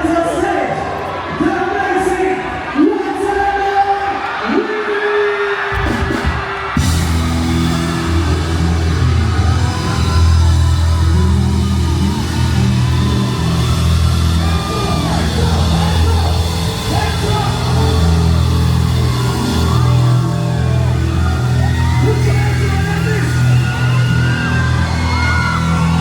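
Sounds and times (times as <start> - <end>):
voices yelling: 0.0 - 26.0
loud music with heavy bass: 5.8 - 26.0.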